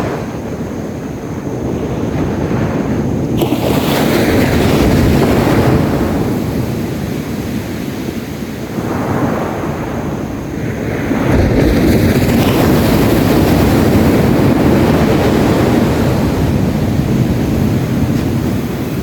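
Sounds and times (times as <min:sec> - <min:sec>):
wind rumbling on microphone: 0:00.0 - 0:19.0
sea waves breaking on beach: 0:02.2 - 0:19.0.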